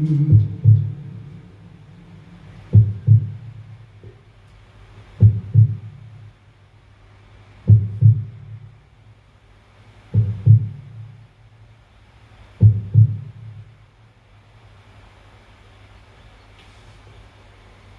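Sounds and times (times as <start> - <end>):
deep heartbeat-like double thumps: 0.0 - 4.2, 5.2 - 6.2, 7.7 - 8.7, 10.2 - 11.1, 12.6 - 13.7
faint low hum: 0.0 - 17.9.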